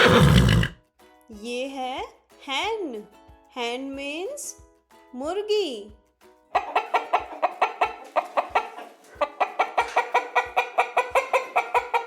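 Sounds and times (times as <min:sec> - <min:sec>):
hen clucking: 0:06.6 - 0:12.0.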